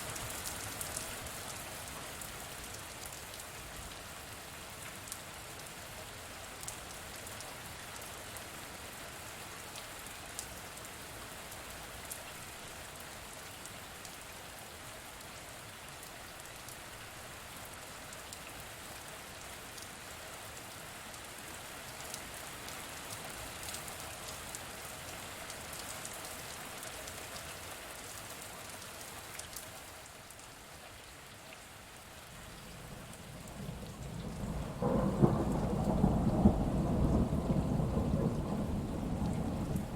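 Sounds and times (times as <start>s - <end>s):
steady rain falling: 0.0s - 39.9s
low thunder rumble: 32.8s - 39.9s.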